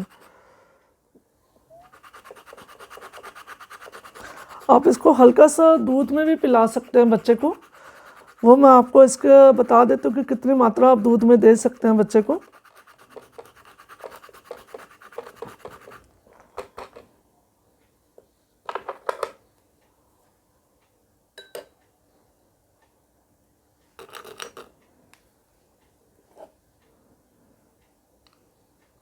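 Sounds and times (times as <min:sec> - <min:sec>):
nutmeg scraping on wet surface: 0:01.8 - 0:16.0.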